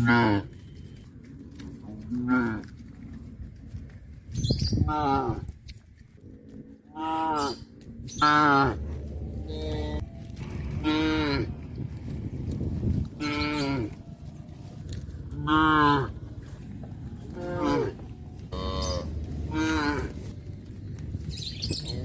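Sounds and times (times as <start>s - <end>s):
cattle mooing: 0.0s - 0.8s, 1.8s - 2.7s, 6.3s - 11.7s, 13.1s - 14.0s, 15.3s - 16.5s, 17.2s - 20.3s.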